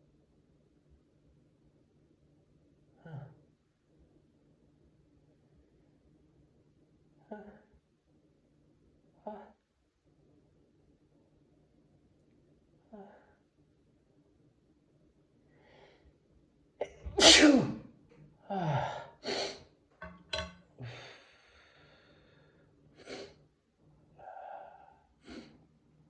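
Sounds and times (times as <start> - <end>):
person sneezing: 16.8 - 17.8.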